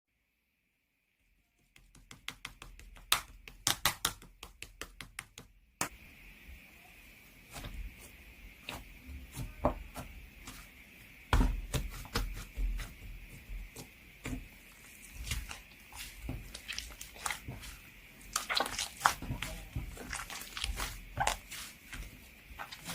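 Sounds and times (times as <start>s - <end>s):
hands squishing slime: 2.1s - 5.4s, 14.2s - 22.9s.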